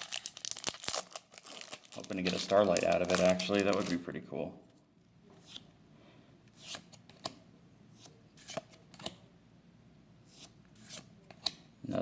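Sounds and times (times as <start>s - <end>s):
trading cards sliding and flipping: 5.4s - 5.7s, 6.5s - 9.2s, 10.3s - 11.6s.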